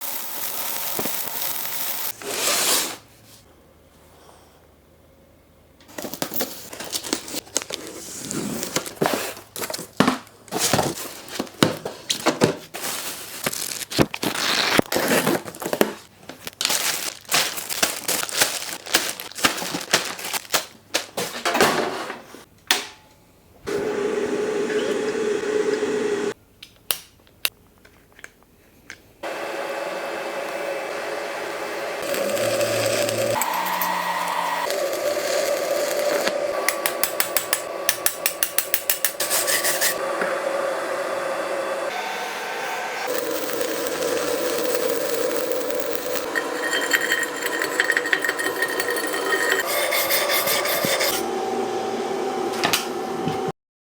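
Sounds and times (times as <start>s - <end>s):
welding arc crackling and hissing: 0.0s - 2.2s, 32.0s - 38.1s, 43.1s - 46.6s.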